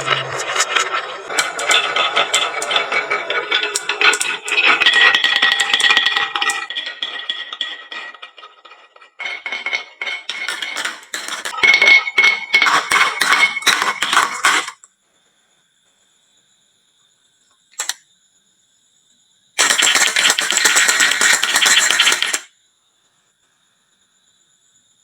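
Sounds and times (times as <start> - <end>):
marbles clattering down wooden run: 0.1 - 14.8, 19.6 - 22.5.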